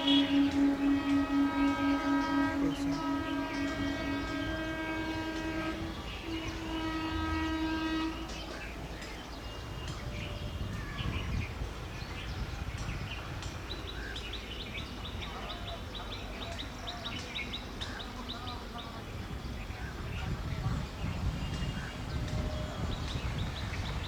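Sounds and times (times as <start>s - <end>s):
train horn blasts: 0.0s - 11.4s
train rumble and wheel clatter: 0.0s - 24.0s.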